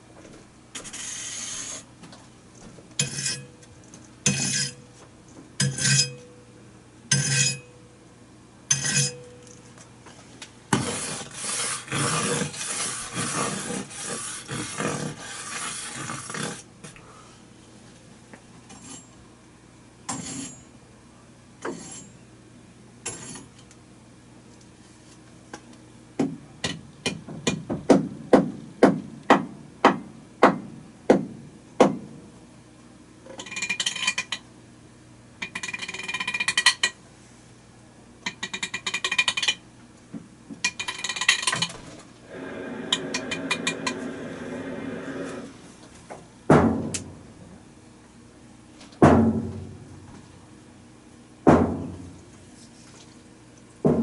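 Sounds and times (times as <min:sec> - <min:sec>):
rushing hiss: 0:42.3 - 0:45.6.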